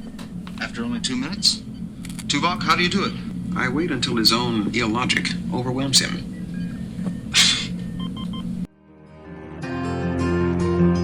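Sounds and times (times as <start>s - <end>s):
low electronic hum: 0.0s - 8.7s.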